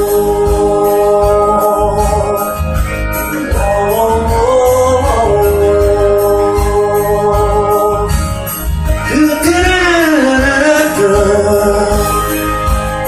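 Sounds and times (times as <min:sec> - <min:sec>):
pop-rock band backing: 0:00.0 - 0:13.0
person singing wordless refrain: 0:09.0 - 0:12.4.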